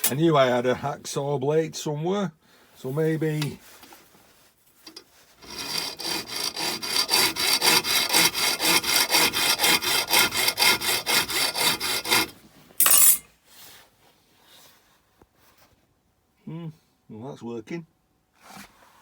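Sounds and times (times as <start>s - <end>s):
hacksaw rasping on steel: 5.4s - 13.2s
loud scrape: 12.8s - 13.2s.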